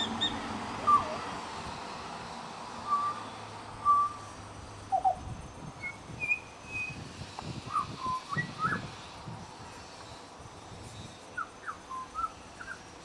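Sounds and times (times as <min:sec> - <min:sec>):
bird singing whistled notes: 0:00.0 - 0:01.2, 0:02.8 - 0:03.2, 0:03.8 - 0:04.3, 0:04.9 - 0:09.0, 0:11.3 - 0:13.0.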